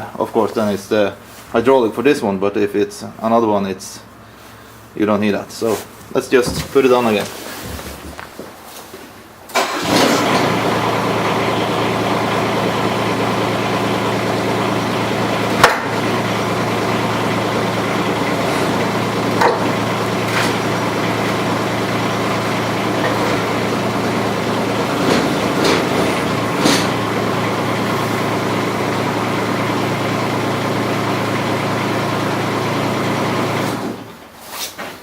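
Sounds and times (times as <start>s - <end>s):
diesel engine running: 9.5s - 34.2s.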